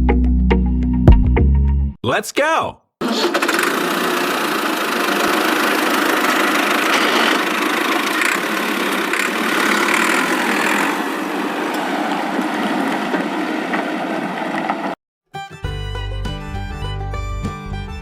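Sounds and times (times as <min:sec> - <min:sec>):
tractor engine running: 0:03.0 - 0:14.8.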